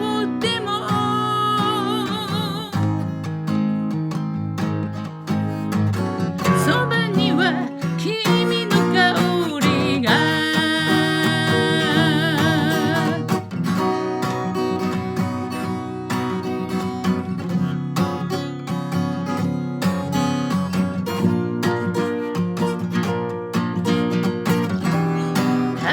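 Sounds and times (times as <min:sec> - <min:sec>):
person singing: 0:00.0 - 0:02.8, 0:06.4 - 0:13.4, 0:24.9 - 0:25.9
acoustic guitar strumming: 0:00.0 - 0:25.9.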